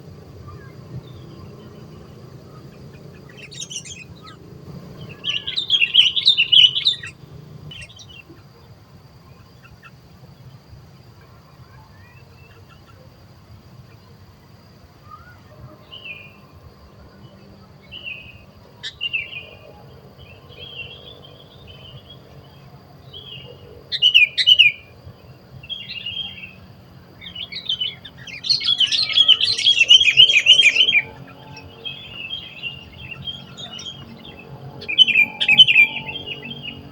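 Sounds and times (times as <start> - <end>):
bird chattering song: 0.0 - 8.7, 17.7 - 36.9
bird chirps: 0.0 - 8.7, 15.0 - 36.9.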